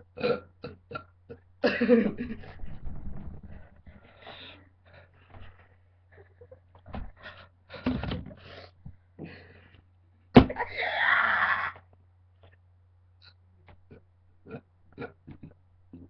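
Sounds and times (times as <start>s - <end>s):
person wheezing and gulping: 0.0s - 2.5s, 13.2s - 16.0s.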